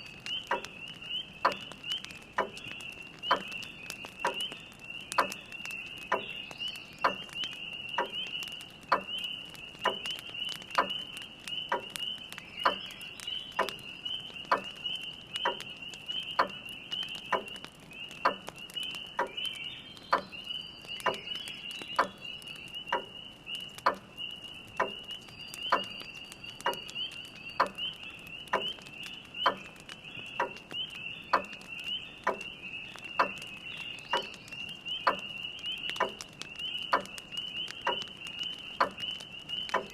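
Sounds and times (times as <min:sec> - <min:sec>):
frogs peeping: 0:00.0 - 0:39.9.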